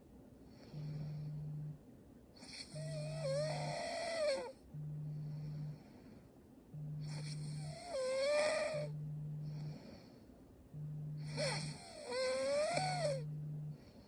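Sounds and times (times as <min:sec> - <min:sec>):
woman snoring: 0:00.6 - 0:01.8, 0:02.4 - 0:06.2, 0:06.8 - 0:14.0.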